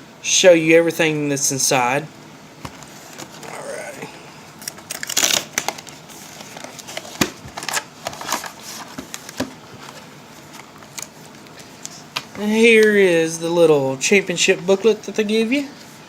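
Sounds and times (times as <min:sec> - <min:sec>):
packaging crinkling: 0:04.6 - 0:12.3.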